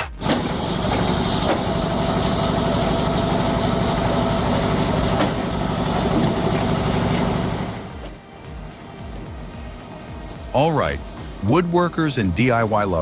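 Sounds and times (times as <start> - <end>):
tractor engine running: 0.0 - 10.5.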